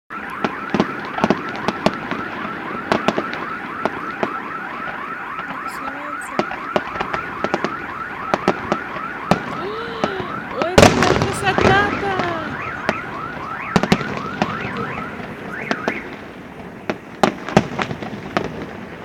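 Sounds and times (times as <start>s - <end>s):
car alarm warbling siren: 0.1s - 19.0s
fireworks bangs and pops: 0.1s - 19.0s.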